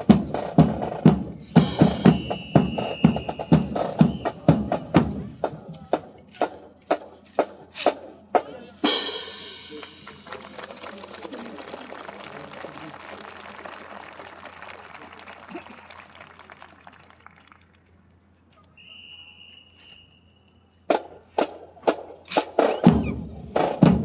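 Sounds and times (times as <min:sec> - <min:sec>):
high-pitched whistle: 0:01.8 - 0:04.8, 0:18.8 - 0:20.8
crowd applauding: 0:09.3 - 0:18.9.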